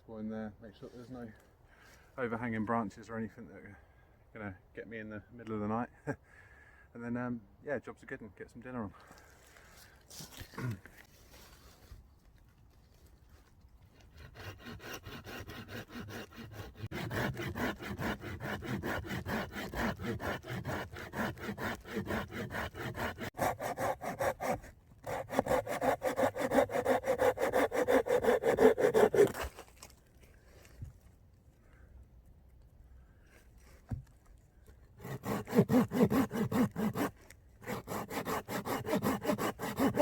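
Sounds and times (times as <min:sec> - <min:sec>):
hand saw cutting wood: 0:13.9 - 0:29.9, 0:34.9 - 0:40.0.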